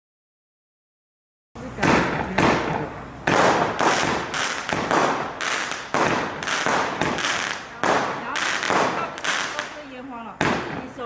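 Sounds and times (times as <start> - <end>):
firework bangs: 1.6 - 11.0.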